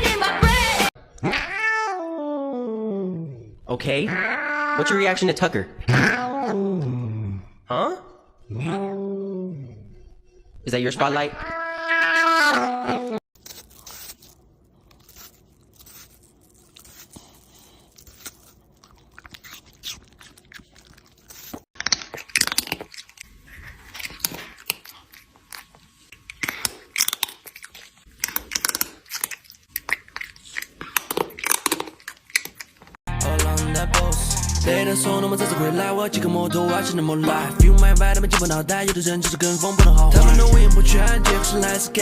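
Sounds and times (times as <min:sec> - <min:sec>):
animal chewing crunchy food: 0:13.4 - 0:33.0.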